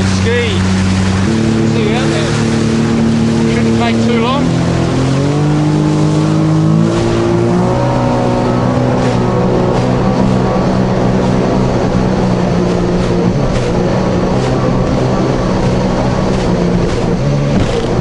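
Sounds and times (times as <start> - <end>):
jet ski engine running: 0.0 - 18.0.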